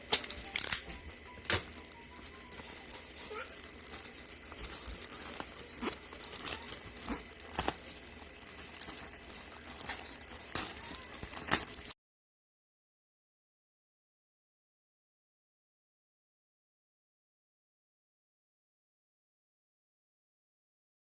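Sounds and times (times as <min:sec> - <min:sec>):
handling clicks and crinkling: 0:00.0 - 0:12.0.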